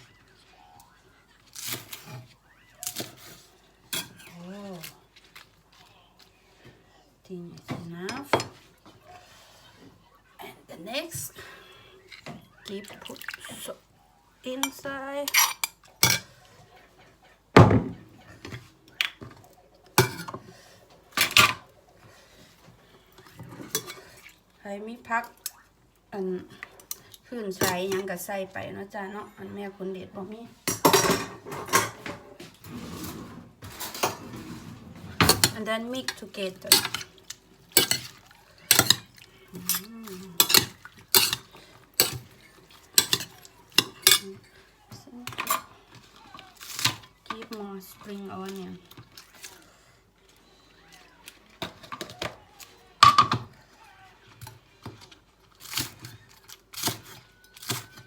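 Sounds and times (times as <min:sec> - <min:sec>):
dishes and utensils clattering: 0:01.5 - 0:04.9, 0:07.6 - 0:09.1, 0:14.5 - 0:16.8, 0:17.5 - 0:24.4, 0:26.8 - 0:28.1, 0:30.6 - 0:49.6, 0:51.6 - 0:52.4, 0:53.0 - 0:53.6, 0:54.3 - 0:58.0.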